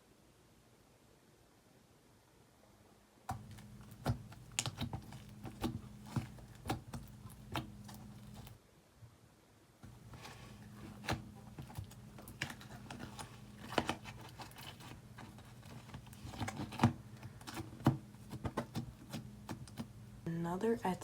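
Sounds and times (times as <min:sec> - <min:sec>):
faint steady hum: 0:00.0 - 0:21.0
slime squishing sticky pops: 0:03.3 - 0:08.5.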